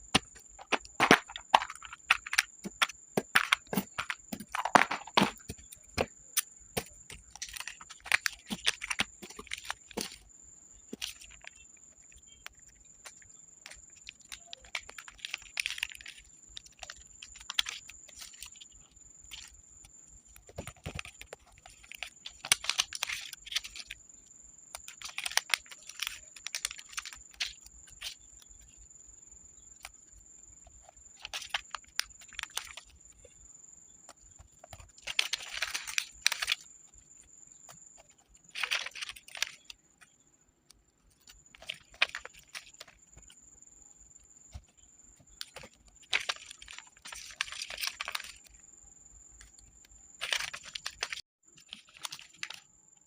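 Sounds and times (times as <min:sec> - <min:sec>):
paper handling: 0:06.8 - 0:10.2, 0:13.0 - 0:18.6, 0:20.4 - 0:24.0, 0:24.8 - 0:28.2, 0:34.4 - 0:36.6, 0:37.7 - 0:39.7, 0:41.2 - 0:43.4, 0:45.3 - 0:48.4, 0:50.2 - 0:52.6.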